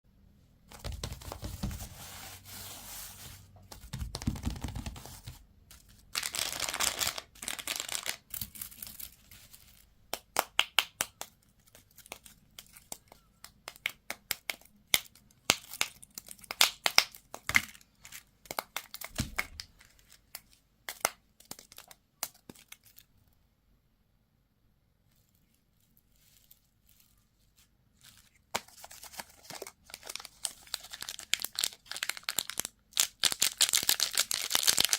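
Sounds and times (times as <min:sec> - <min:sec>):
candy wrappers crinkling: 0:04.7 - 0:09.9, 0:11.1 - 0:23.1, 0:25.2 - 0:34.9.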